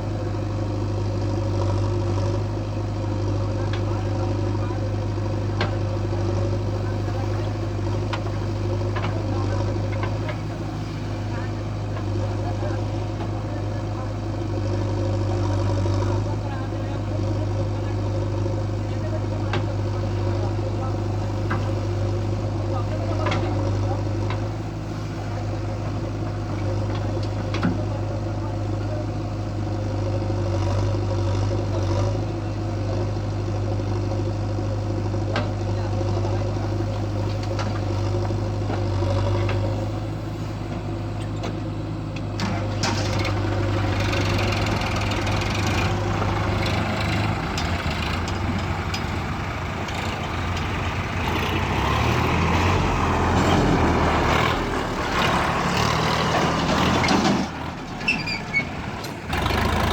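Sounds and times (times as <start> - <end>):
heavy diesel engine idling: 0.0 - 59.9.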